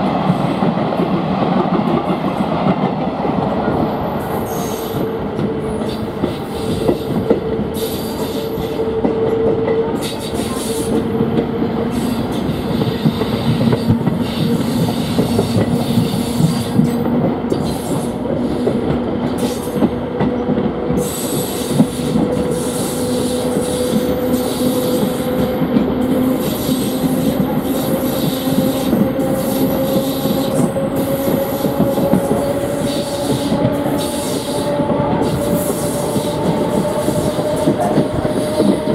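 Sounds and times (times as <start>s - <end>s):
train wheels clattering: 4.2s - 38.9s.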